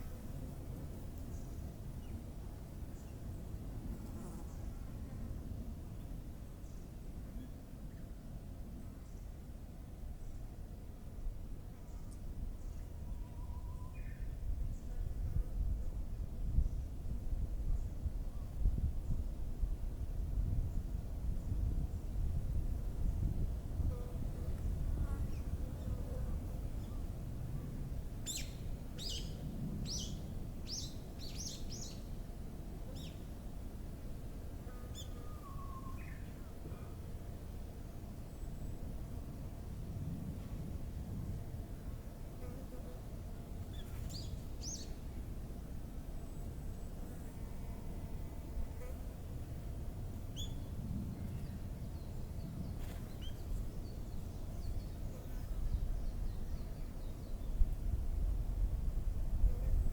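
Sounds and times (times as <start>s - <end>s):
faint whistled bird note: 13.1s - 14.3s.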